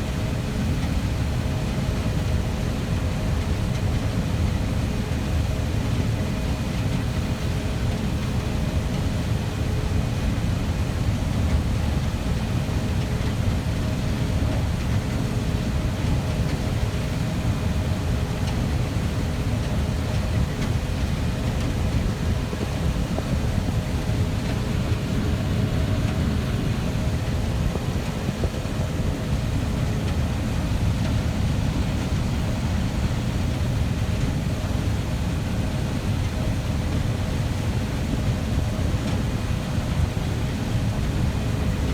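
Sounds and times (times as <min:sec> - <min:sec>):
faint steady hums: 0:11.3 - 0:41.9
farm machinery rumbling: 0:20.3 - 0:33.6.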